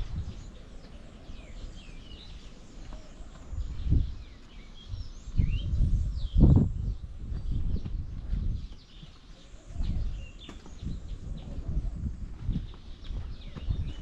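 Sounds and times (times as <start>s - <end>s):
small birds chirping and twittering: 0.0s - 14.0s
low rumbling bumps: 4.9s - 8.9s, 9.8s - 14.0s.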